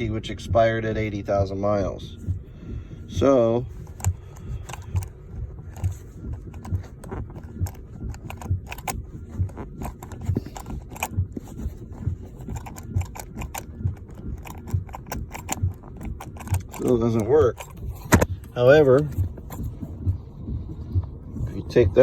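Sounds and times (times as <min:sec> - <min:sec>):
seatbelt buckle clicking: 0:03.1 - 0:20.2.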